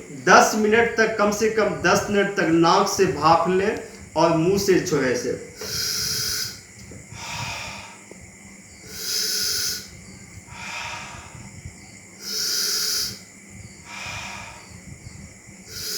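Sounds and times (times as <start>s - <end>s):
person breathing slowly: 5.6s - 15.9s.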